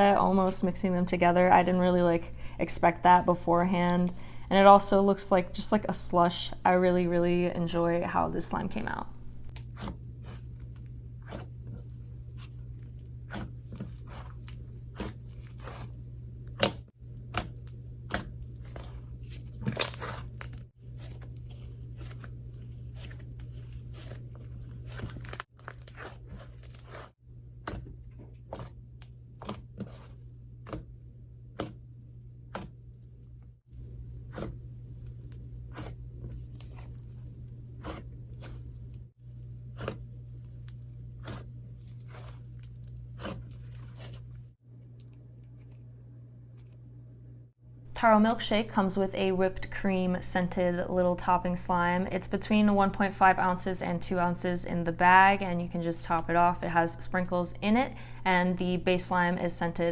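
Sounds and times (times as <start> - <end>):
steady low hum: 0.0 - 59.9
slime crunchy crackles: 17.5 - 27.1, 34.1 - 44.3.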